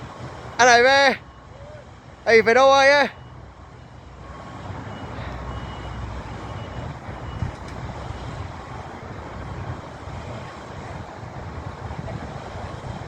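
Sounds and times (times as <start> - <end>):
construction machinery rumbling: 0.0 - 13.0
faint reversing alarm beeping: 1.1 - 8.5.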